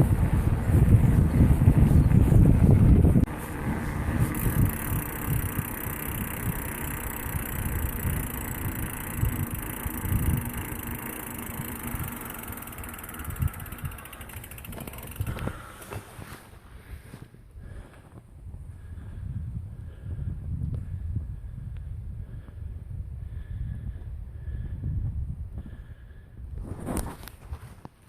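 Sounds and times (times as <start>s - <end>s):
bicycle freehub ticking: 3.0s - 16.0s.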